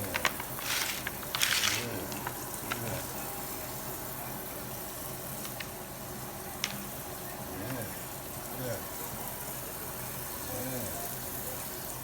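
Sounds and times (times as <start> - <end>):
utensils clicking: 0.0 - 2.3
food sizzling in a pan: 0.4 - 12.0.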